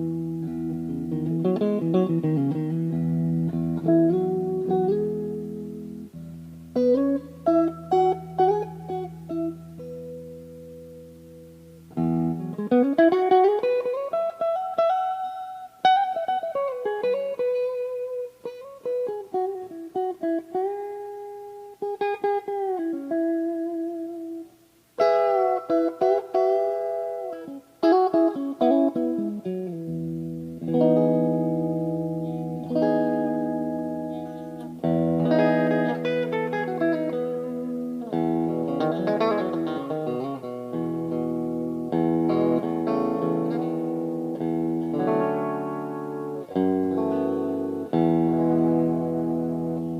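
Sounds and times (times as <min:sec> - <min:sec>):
clean electric guitar: 0:00.0 - 0:49.9.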